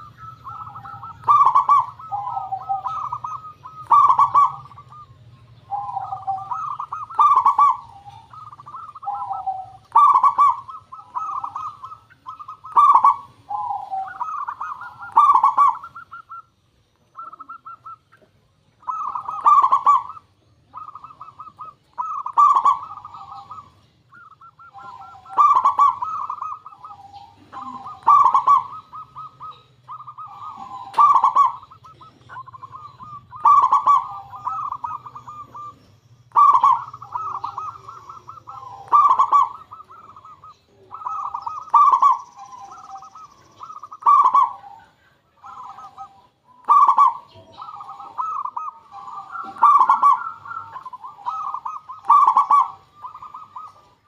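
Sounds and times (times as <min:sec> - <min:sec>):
dove trilling coo: 0:00.0 - 0:54.0.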